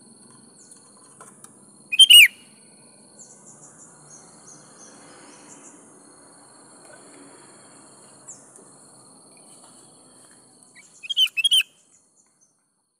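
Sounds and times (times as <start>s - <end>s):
faint high insect buzz: 0.0s - 12.8s
bird call with wavering pitch: 1.9s - 2.4s, 11.0s - 11.7s
soft chirps: 1.9s - 2.5s, 9.3s - 12.6s.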